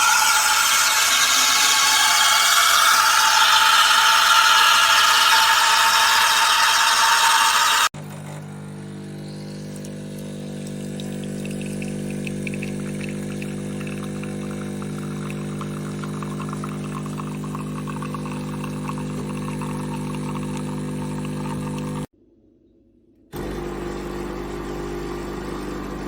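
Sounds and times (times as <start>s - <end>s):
espresso machine hissing: 0.0s - 22.1s, 23.4s - 26.0s
pump buzzing hum: 8.0s - 22.1s, 23.4s - 26.0s.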